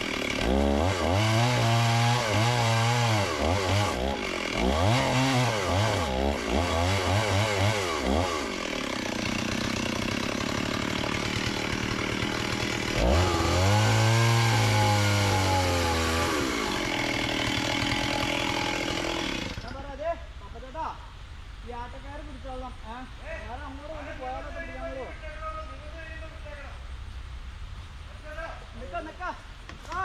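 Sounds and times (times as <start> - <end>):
chainsaw engine revving: 0.0 - 19.8.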